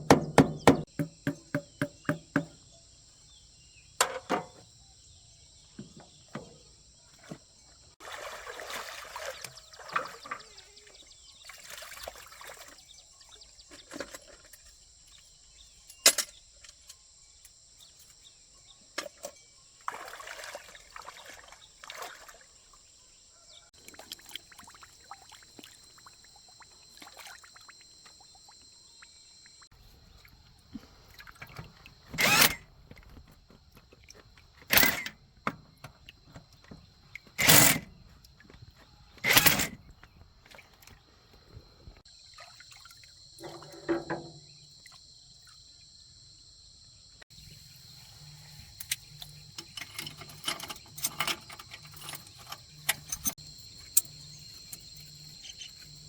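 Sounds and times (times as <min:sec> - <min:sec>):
scraping or sloshing: 0:08.0 - 0:12.9, 0:19.9 - 0:22.6, 0:42.3 - 0:44.4.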